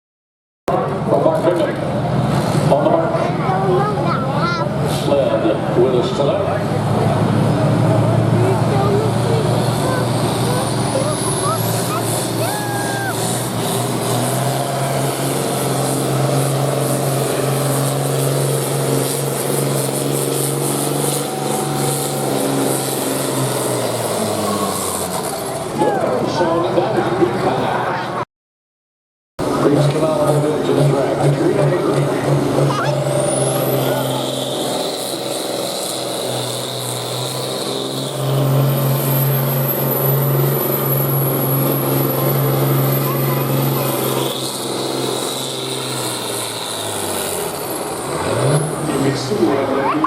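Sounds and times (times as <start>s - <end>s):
tractor engine running under load: 13.1s - 26.6s, 29.4s - 49.4s.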